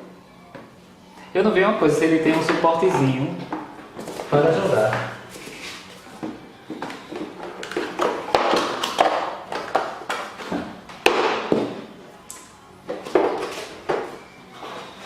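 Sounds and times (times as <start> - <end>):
packaging rustling and scraping: 14.5 - 15.0.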